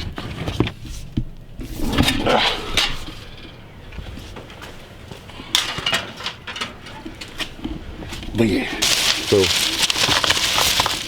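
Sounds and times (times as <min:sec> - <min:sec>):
rake scraping: 0:08.2 - 0:11.0
rake knocking: 0:08.8 - 0:11.0
rake rubbing: 0:08.8 - 0:11.0.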